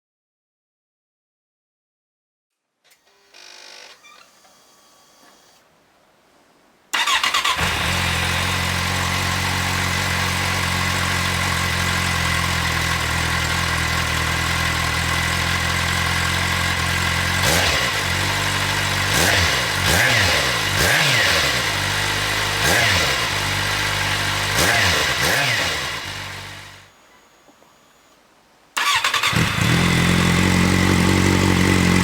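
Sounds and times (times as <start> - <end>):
motorcycle engine revving: 7.0 - 27.0, 28.8 - 32.0
motorcycle engine starting and idling: 7.0 - 28.1, 28.8 - 32.0.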